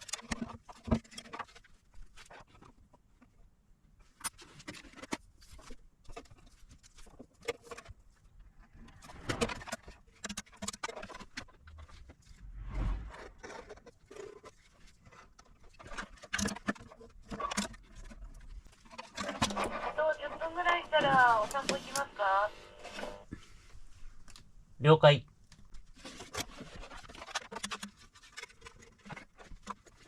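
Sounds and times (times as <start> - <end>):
clicks and scrapes on casing: 13.4 - 20.7, 25.5 - 30.0
tools and screws handled: 25.8 - 30.0.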